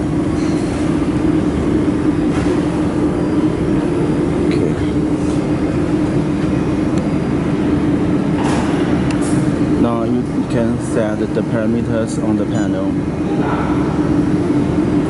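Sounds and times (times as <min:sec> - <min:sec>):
dust collection fan running: 0:00.0 - 0:15.0.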